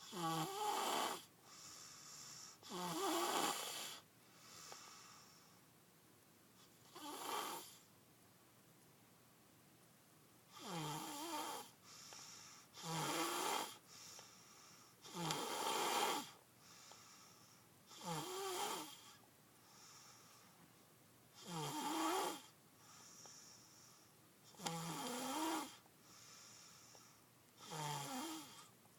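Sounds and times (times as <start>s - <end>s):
person snoring: 0.0s - 5.2s, 6.9s - 7.9s, 10.5s - 11.7s, 12.7s - 13.8s, 15.0s - 16.4s, 17.9s - 19.2s, 21.4s - 22.5s, 24.5s - 25.8s, 27.6s - 28.7s
soft breaths: 0.0s - 5.8s, 10.5s - 28.8s.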